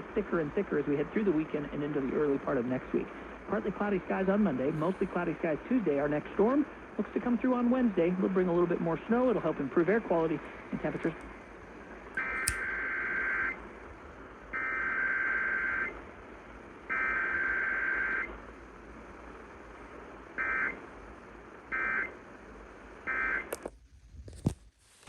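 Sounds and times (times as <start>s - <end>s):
click: 12.1s - 12.6s, 23.5s - 23.7s.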